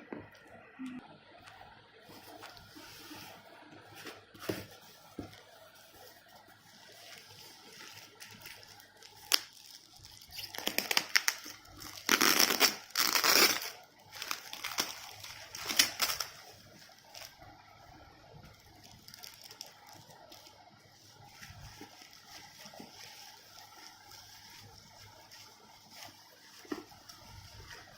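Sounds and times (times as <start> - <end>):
packaging tearing and crinkling: 7.7 - 17.3.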